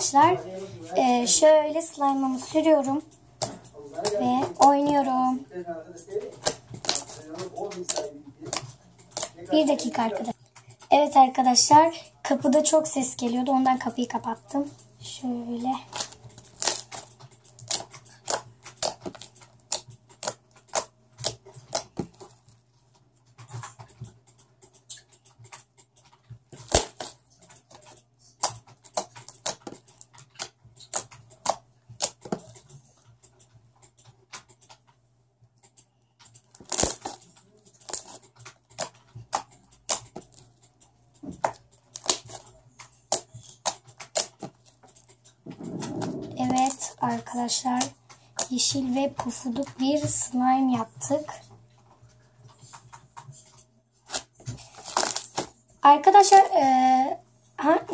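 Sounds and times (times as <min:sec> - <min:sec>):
slime popping and crackling: 0:06.3 - 0:10.4, 0:15.4 - 0:22.5, 0:26.5 - 0:32.7, 0:36.3 - 0:50.4, 0:54.0 - 0:56.8.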